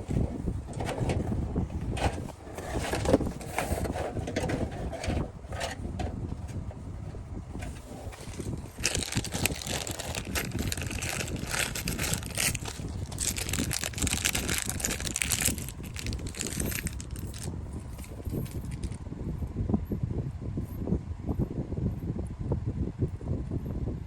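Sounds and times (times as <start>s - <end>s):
rustling and scraping: 0.0s - 19.0s.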